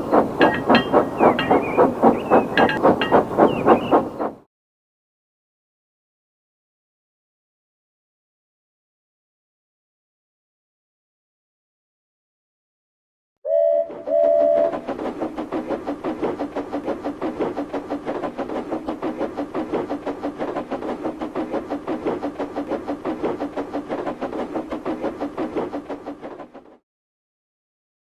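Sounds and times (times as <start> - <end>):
steam engine puffing: 0.0 - 4.4, 13.8 - 26.8
steam locomotive whistle: 13.5 - 14.9.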